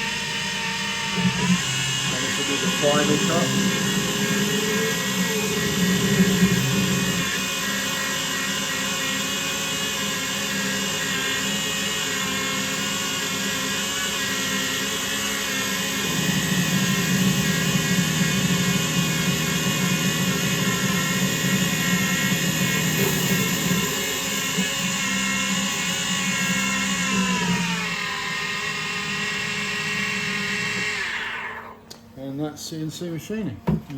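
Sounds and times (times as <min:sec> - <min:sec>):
lathe machine hum: 0:00.0 - 0:31.8
machine whine: 0:00.0 - 0:31.8.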